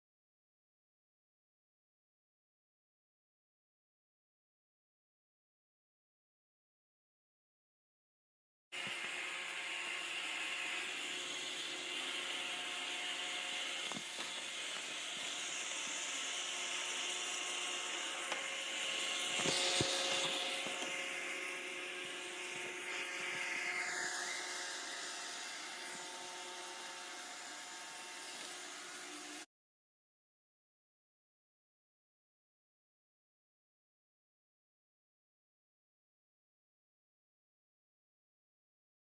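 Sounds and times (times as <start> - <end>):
robot vacuum whining: 8.8 - 29.5.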